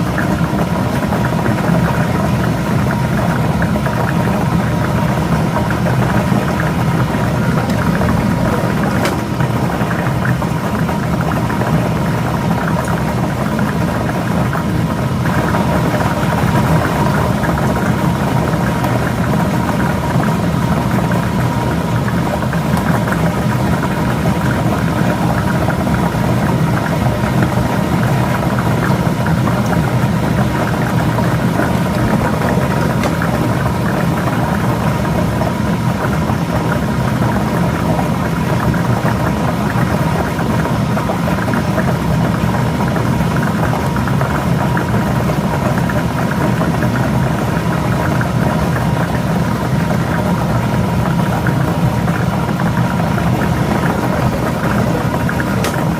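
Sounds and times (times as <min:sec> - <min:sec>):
blower motor whirring: 0:03.1 - 0:45.6.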